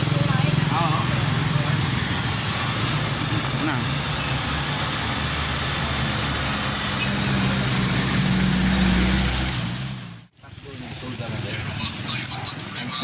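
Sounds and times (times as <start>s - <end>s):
engine idling: 0.0s - 8.9s.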